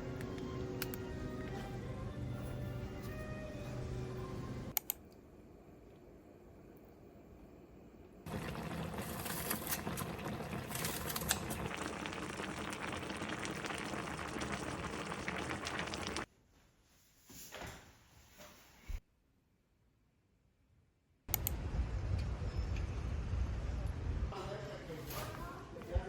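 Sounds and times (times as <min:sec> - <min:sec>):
food bubbling and crackling: 0:08.2 - 0:16.3.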